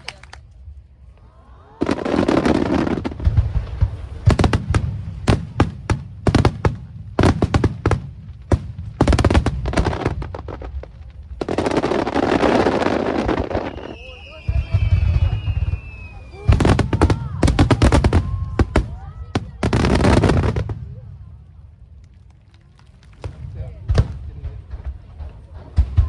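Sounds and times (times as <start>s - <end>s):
dense firework crackling: 0.0s - 26.0s
firework bangs: 1.8s - 21.4s, 22.3s - 26.0s
rising firework whistle: 12.2s - 19.0s.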